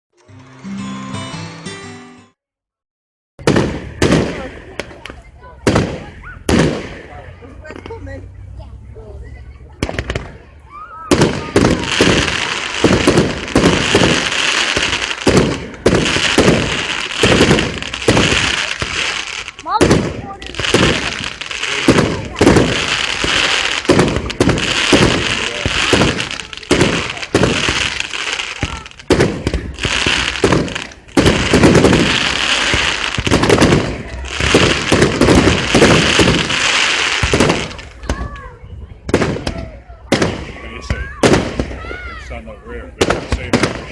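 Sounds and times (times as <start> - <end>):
fireworks loud bangs: 3.4 - 7.9, 9.8 - 42.2, 43.0 - 43.9
fireworks crackling fizz: 11.1 - 38.4.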